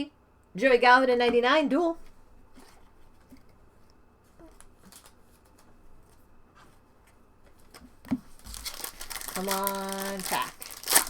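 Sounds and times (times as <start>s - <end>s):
trading cards being handled: 4.3s - 6.2s, 7.4s - 11.0s.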